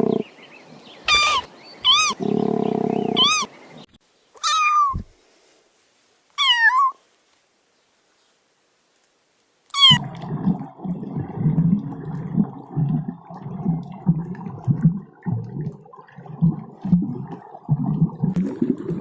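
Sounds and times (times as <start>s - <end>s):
large animal grunting: 0.0s - 0.2s.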